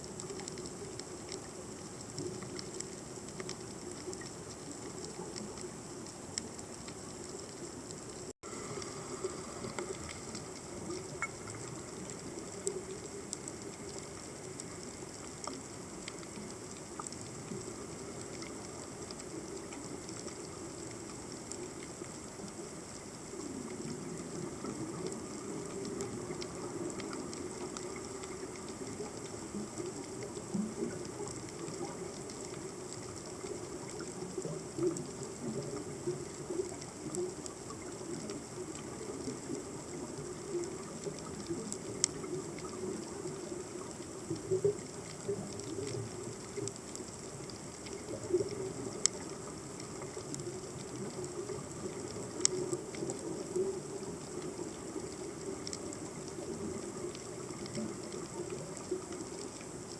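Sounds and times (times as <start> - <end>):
sharp underwater clicks: 0.0 - 59.9.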